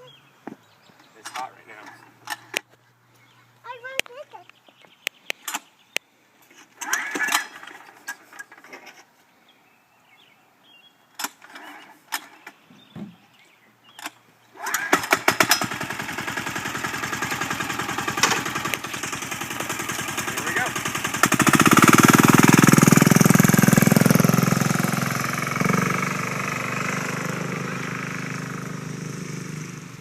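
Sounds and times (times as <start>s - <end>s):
diesel motorcycle engine idling: 15.3s - 30.0s
scattered clicks and knocks: 18.2s - 18.9s.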